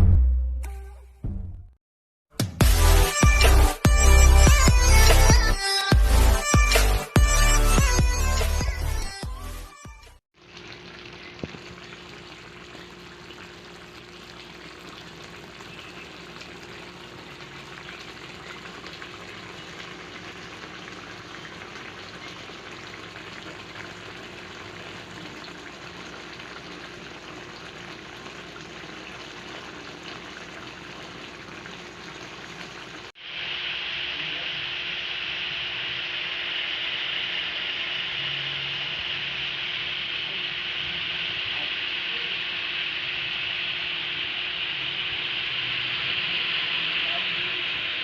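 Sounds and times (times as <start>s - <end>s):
seafood sizzling in a pan: 10.4s - 48.0s.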